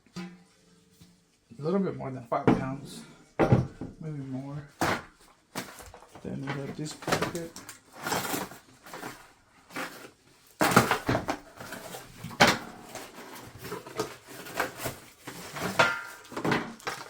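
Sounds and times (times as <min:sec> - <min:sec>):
packaging rustling with knocks: 0:04.7 - 0:17.0.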